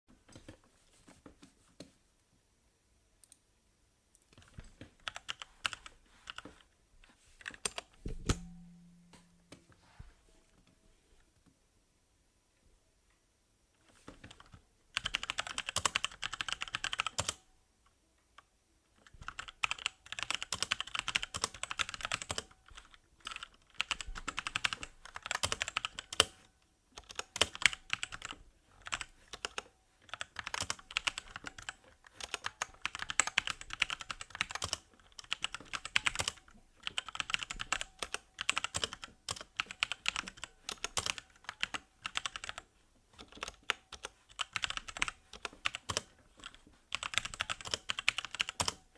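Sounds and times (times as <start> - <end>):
mechanical keyboard typing: 4.3 - 6.7, 7.4 - 8.5, 14.0 - 17.4, 18.4 - 48.9.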